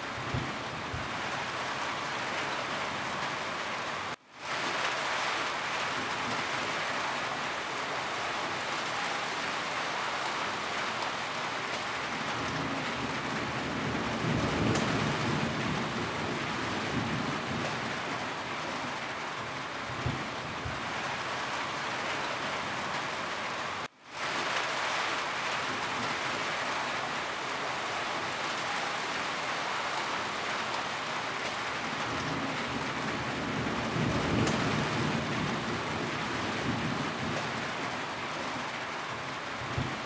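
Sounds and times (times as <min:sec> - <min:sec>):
rain on a roof: 0:00.0 - 0:40.0
thunder rumbling: 0:31.9 - 0:37.9.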